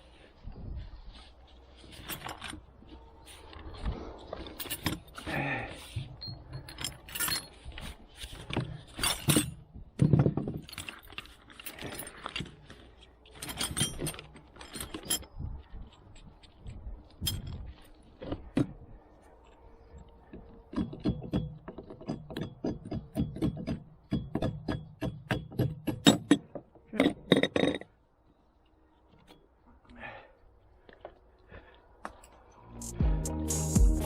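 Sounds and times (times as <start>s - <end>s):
metal tools clinking and clanking: 1.8s - 18.8s, 20.3s - 28.0s.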